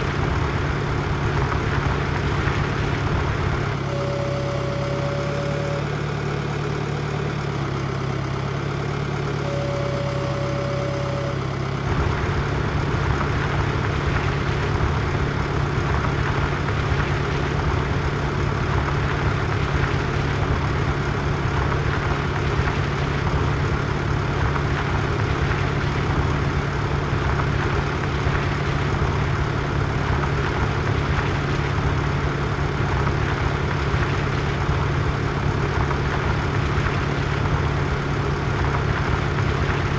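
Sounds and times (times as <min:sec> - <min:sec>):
tractor engine running: 0:00.0 - 0:39.9
short steady tone: 0:03.8 - 0:06.4, 0:09.2 - 0:12.3.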